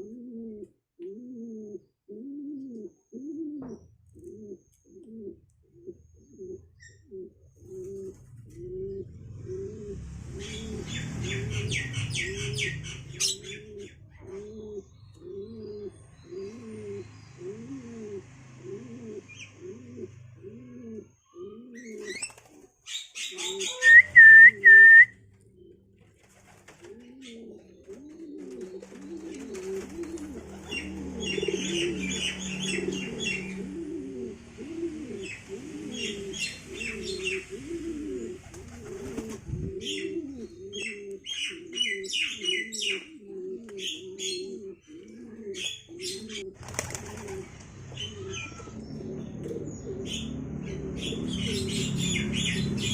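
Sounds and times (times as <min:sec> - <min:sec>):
pigeons cooing: 0:00.0 - 0:52.9
wings fluttering: 0:21.9 - 0:22.9, 0:26.0 - 0:33.2, 0:38.3 - 0:39.7, 0:46.5 - 0:48.2.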